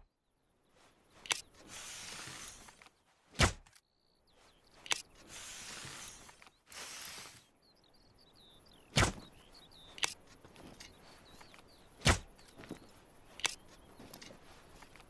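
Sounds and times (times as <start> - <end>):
birds chirping: 0.0 - 15.0
bow shots: 1.3 - 3.8, 8.9 - 9.4, 12.0 - 12.4.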